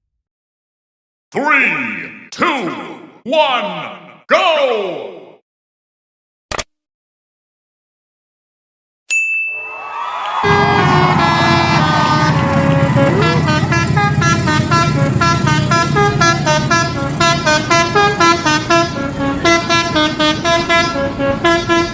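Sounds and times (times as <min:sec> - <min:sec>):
multi-tone bus horn melody: 0:10.4 - 0:21.9
low engine rumble: 0:10.5 - 0:21.9.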